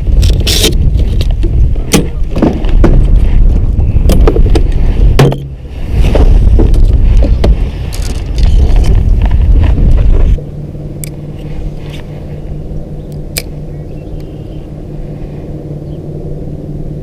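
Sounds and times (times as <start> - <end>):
boat motor humming: 0.0 - 17.0
loud low rumble: 0.0 - 17.0.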